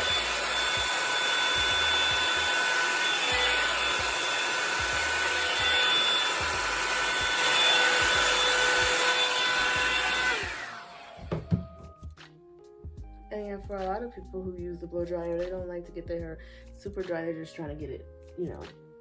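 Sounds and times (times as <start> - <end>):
hair dryer rushing airflow: 0.0 - 11.7.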